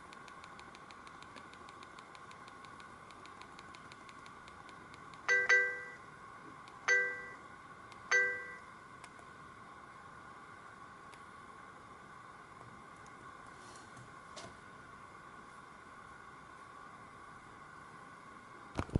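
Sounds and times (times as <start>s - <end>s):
phone chime dings: 5.3s - 6.0s, 6.9s - 7.4s, 8.1s - 8.6s.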